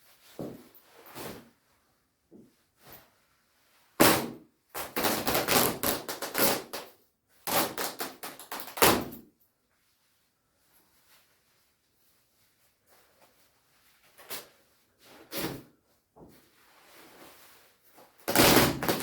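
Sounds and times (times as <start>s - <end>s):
nylon jacket rustling and tearing: 4.0s - 9.2s, 16.7s - 19.0s.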